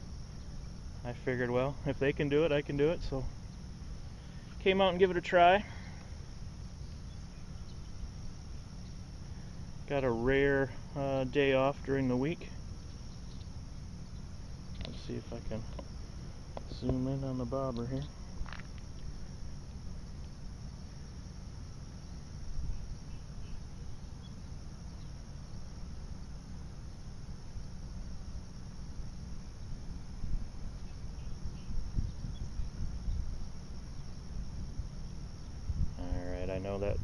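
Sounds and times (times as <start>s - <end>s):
crickets trilling: 0.0s - 37.0s
soft bumps: 14.8s - 19.4s.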